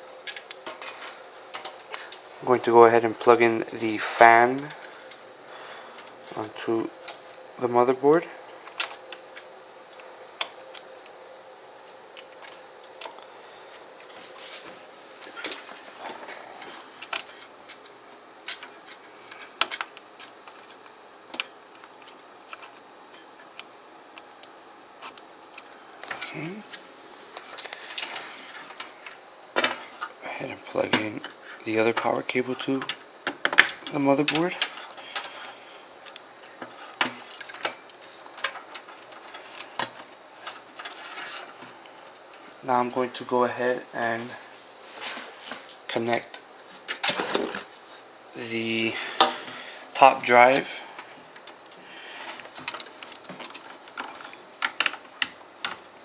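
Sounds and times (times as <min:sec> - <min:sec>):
cable rustling: 0:00.0 - 0:43.2, 0:44.0 - 0:56.0
cable connectors clicking: 0:16.6 - 0:26.3, 0:51.3 - 0:56.0.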